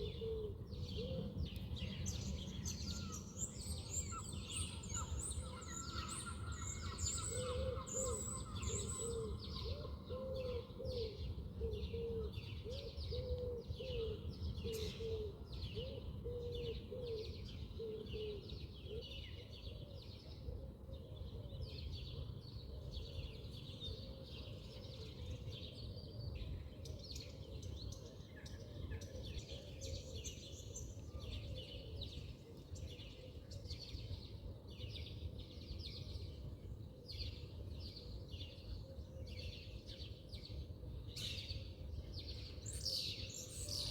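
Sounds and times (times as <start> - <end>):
birds chirping and calling: 0.0 - 17.1, 42.3 - 43.9.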